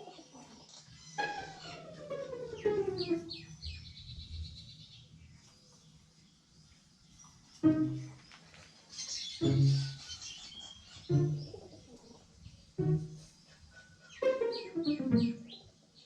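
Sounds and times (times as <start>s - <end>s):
bird calls: 0.0s - 5.9s, 7.1s - 16.0s
high bird chirps: 0.9s - 4.9s, 7.6s - 8.3s, 9.0s - 11.9s, 14.0s - 15.7s
background music: 1.2s - 3.8s, 7.6s - 8.2s, 9.4s - 10.0s, 11.1s - 11.7s, 12.8s - 13.4s, 14.2s - 15.7s.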